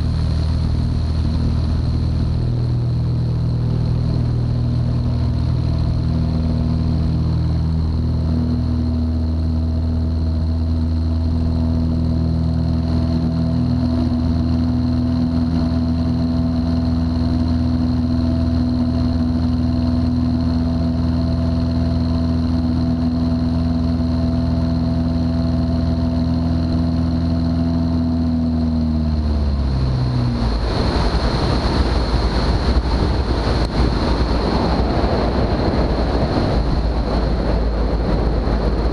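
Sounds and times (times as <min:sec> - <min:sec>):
light aircraft engine droning: 0:00.0 - 0:38.9
wind noise rushing: 0:30.2 - 0:38.9.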